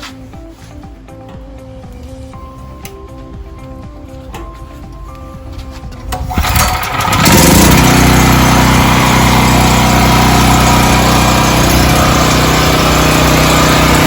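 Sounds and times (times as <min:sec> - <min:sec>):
generator engine cranking: 0:04.3 - 0:14.0
generator engine running: 0:05.0 - 0:14.0.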